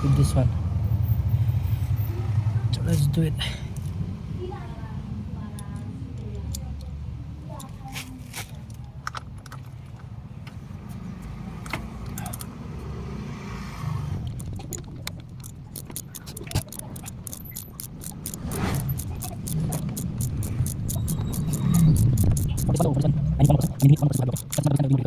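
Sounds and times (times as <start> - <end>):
low steady rumble: 0.0 - 7.6, 14.0 - 25.0
ratchet wrench clicking: 12.1 - 12.5, 14.2 - 25.0.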